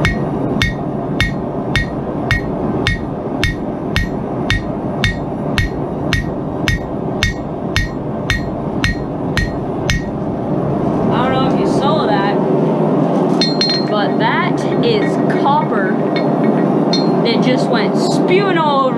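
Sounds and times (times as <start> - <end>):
hammer blows on anvil: 0.0 - 10.2, 16.1 - 17.3
continuous rushing noise: 0.0 - 18.9.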